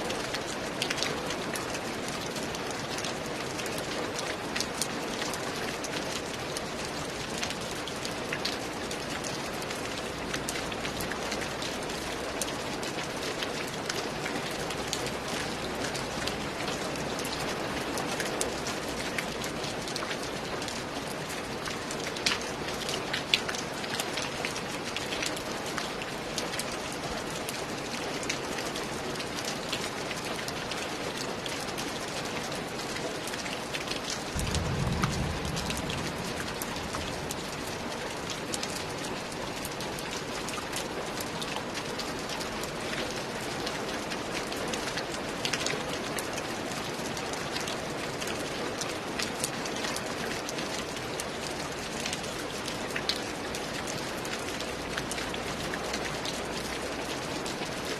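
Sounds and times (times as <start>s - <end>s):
steady rain falling: 0.0s - 57.9s
brief low rumble: 34.4s - 37.7s.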